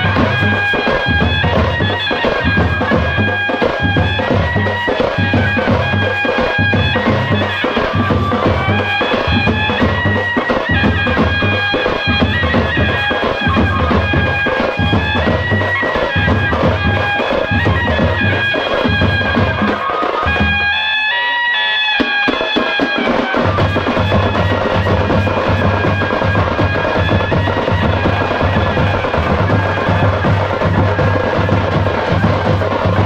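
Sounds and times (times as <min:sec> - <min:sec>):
steady drum beat: 0:00.0 - 0:21.0, 0:22.0 - 0:33.0.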